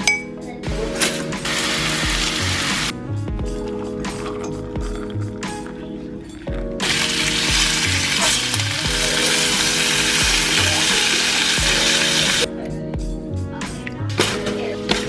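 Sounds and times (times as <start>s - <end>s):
hip-hop beat: 0.0s - 15.0s
food sizzling in a frying pan: 6.8s - 12.4s.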